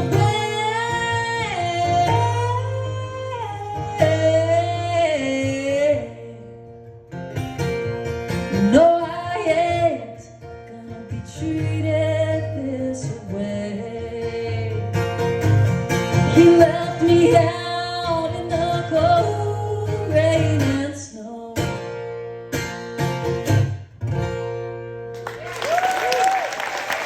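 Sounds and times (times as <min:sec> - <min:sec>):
acoustic bluegrass band playing: 0:00.0 - 0:25.2.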